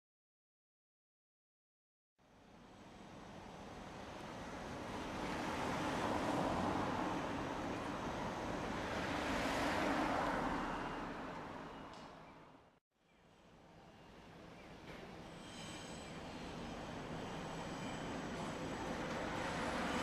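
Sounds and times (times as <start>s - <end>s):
cars passing by: 5.0s - 12.8s, 18.9s - 20.0s.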